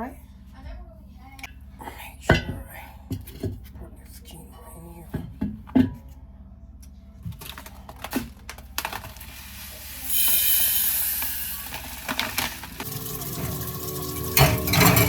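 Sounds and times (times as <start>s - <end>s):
water running from tap: 9.3s - 15.0s
kitchenware knocks: 14.2s - 15.0s.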